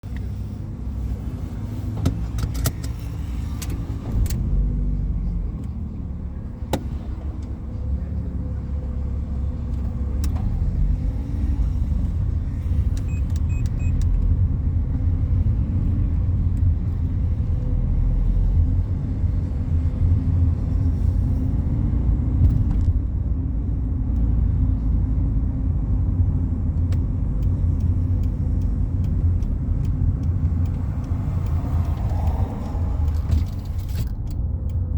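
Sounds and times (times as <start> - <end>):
car engine and road rumble: 0.0 - 34.9
short faint beeps: 13.1 - 14.0
sharp clicks and rattles: 26.7 - 34.9.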